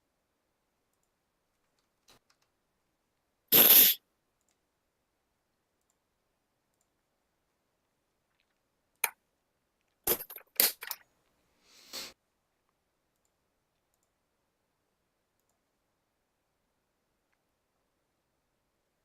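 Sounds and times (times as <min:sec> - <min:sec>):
short hissing noise: 0:03.5 - 0:04.0, 0:11.7 - 0:12.2.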